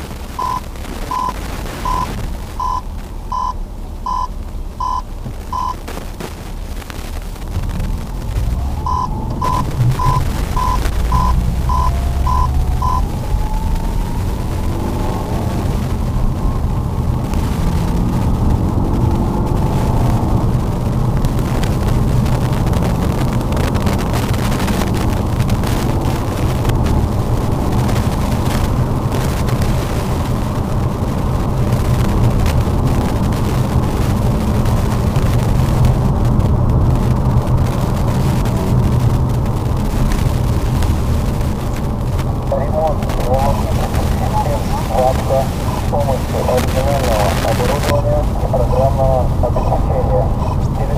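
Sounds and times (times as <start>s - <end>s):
car engine and tyre rumble: 0.0s - 50.9s
short electronic beeps: 0.4s - 5.8s, 8.8s - 13.1s, 49.5s - 50.7s.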